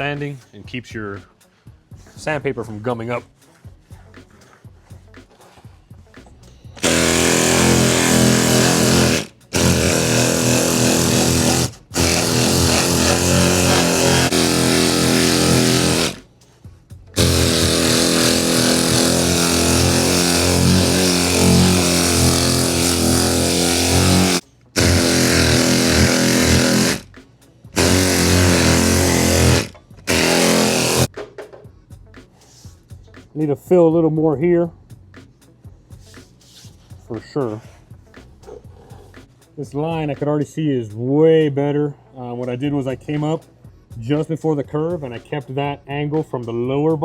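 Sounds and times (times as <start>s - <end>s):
power sander running: 6.8s - 16.2s, 17.2s - 27.1s, 27.8s - 31.1s.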